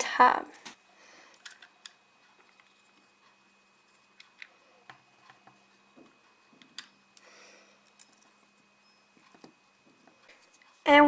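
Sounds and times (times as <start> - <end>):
small clicks and taps: 4.2 - 8.4.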